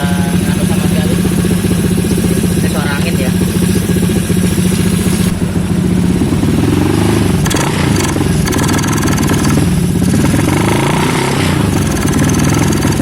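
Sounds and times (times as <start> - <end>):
scooter engine idling and revving: 0.0 - 13.0.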